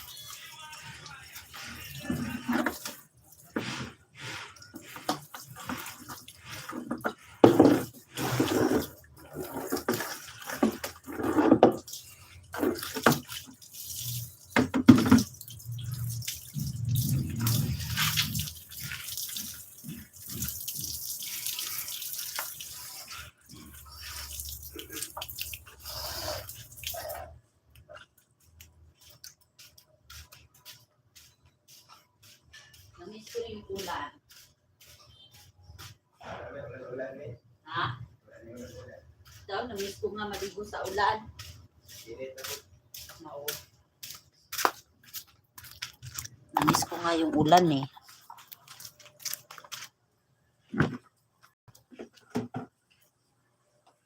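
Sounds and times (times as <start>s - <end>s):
tap water running: 0.0s - 27.2s, 45.6s - 49.8s.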